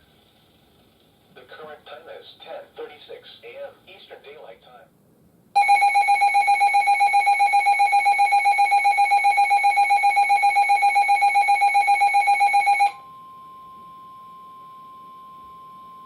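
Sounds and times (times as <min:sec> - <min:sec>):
loud high pulsing beep: 0:05.6 - 0:16.0
steady warning alarm tone: 0:05.6 - 0:16.0.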